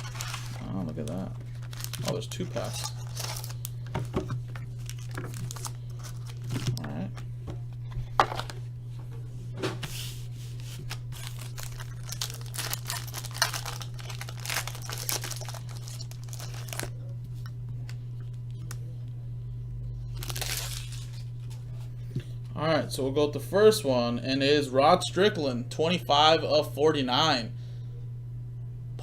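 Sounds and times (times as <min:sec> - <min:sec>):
wrappers rustling and crinkling: 0:00.0 - 0:03.7, 0:04.7 - 0:07.1, 0:09.9 - 0:17.0, 0:20.1 - 0:21.8
low electrical hum: 0:00.0 - 0:29.0.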